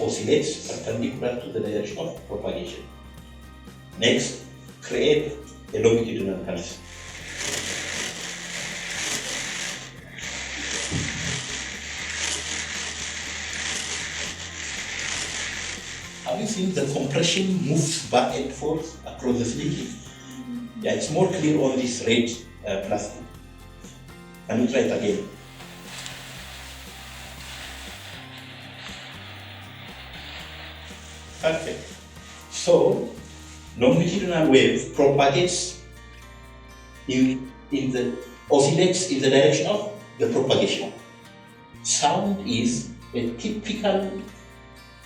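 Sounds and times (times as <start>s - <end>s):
background music with bass line: 0.0s - 45.0s
plastic slinky coils rattling: 6.6s - 20.0s, 24.9s - 34.7s.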